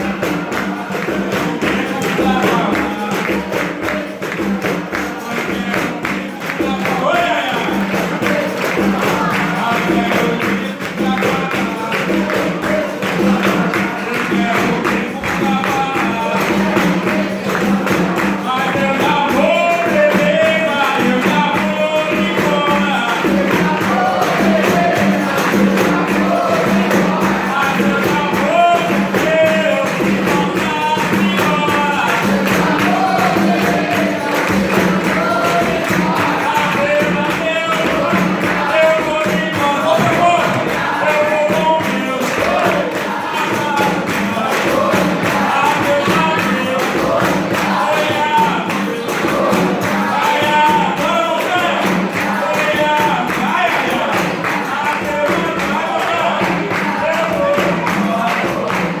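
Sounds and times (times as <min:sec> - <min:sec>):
group singing along: 0:00.0 - 0:59.0
percussion with tambourine: 0:00.0 - 0:59.0
person singing: 0:00.0 - 0:59.0.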